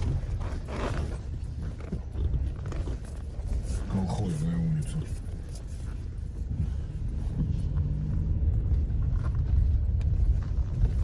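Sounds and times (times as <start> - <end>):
car engine and road rumble: 0.0 - 11.0.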